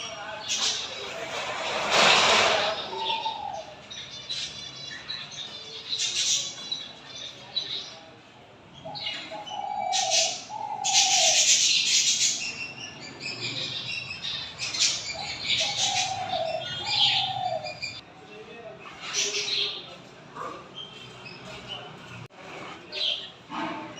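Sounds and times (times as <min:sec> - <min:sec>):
dove cooing: 0:02.6 - 0:03.8, 0:09.0 - 0:11.7, 0:15.1 - 0:18.0.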